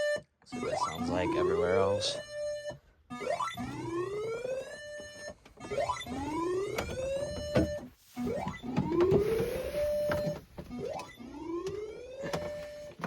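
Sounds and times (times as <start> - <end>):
tornado siren wailing over loudspeaker: 0.5 - 2.4, 3.1 - 12.8.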